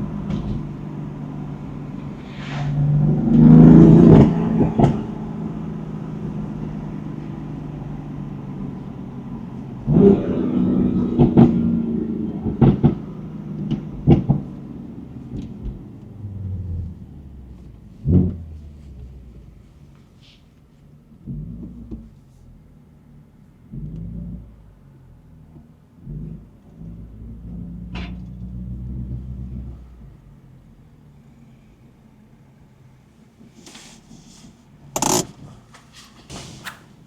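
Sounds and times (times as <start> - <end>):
exhaust cracks: 0.0 - 22.2, 34.8 - 37.0
car engine accelerating: 0.0 - 34.2.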